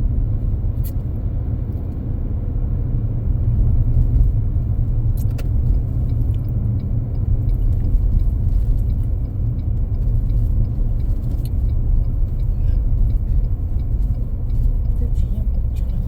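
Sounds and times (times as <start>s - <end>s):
car driving rumble from inside: 0.0s - 16.0s
faint ticks: 5.2s - 16.0s.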